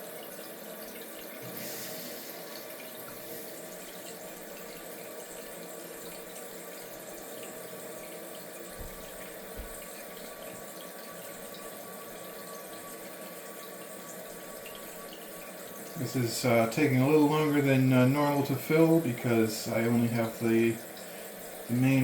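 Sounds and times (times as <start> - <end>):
toilet tank refilling: 0.0 - 22.0.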